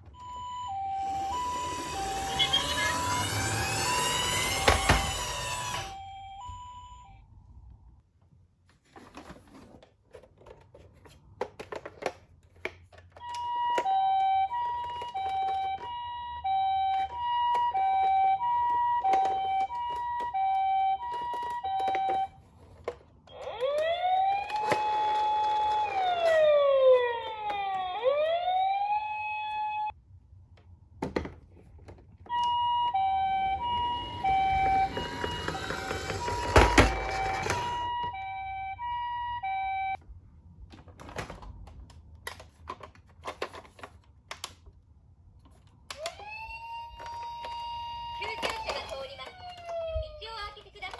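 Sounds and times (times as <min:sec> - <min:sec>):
toy ambulance siren: 0:00.1 - 0:07.2, 0:13.2 - 0:22.7, 0:23.3 - 0:29.9, 0:32.3 - 0:40.0, 0:45.9 - 0:50.9.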